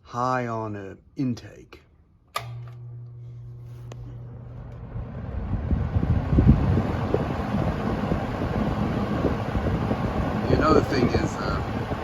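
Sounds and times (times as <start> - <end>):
fan motor hum: 2.3 - 12.0
fan air rushing: 3.2 - 12.0.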